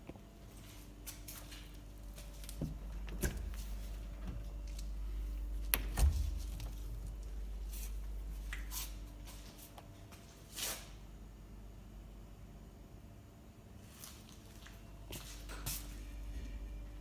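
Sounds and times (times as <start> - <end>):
low hum: 1.8 - 9.3, 16.0 - 17.0.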